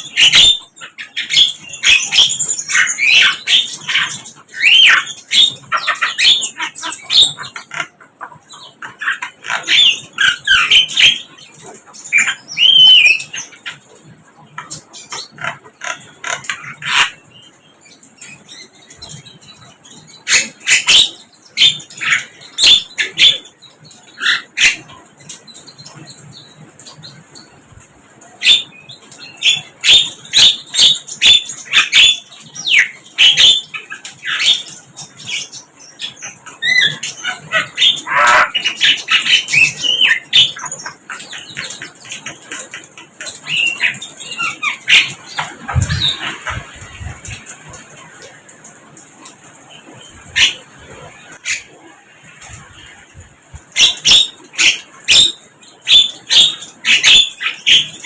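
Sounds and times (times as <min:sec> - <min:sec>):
bird chirping: 0:00.0 - 0:27.7, 0:28.4 - 0:48.3, 0:52.4 - 0:58.0.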